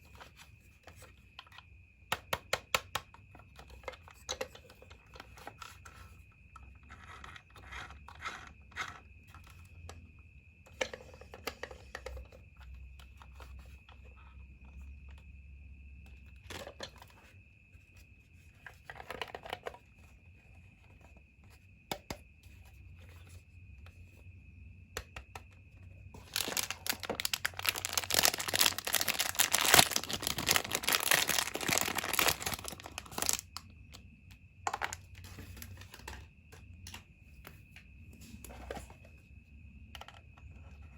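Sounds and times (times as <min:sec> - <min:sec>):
wrapping tearing and crinkling: 0:26.2 - 0:33.4
packaging clicks and rustles: 0:26.2 - 0:33.7.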